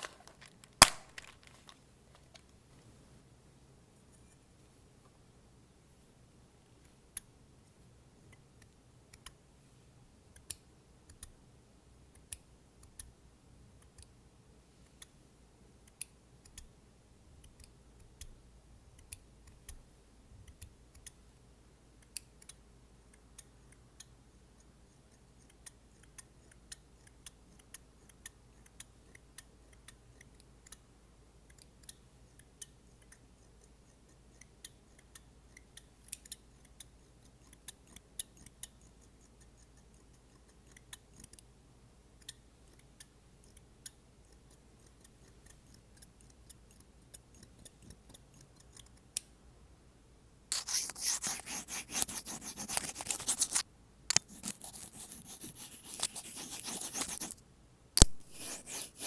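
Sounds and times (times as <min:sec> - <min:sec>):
scissors snipping: 0:00.0 - 0:02.4, 0:50.5 - 0:57.4, 0:58.0 - 0:59.0.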